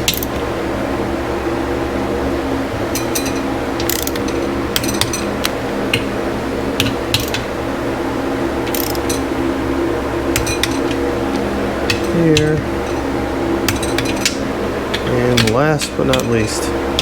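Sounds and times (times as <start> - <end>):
air conditioner humming: 0.0 - 17.0
torque wrench ratcheting clicks: 3.8 - 4.2.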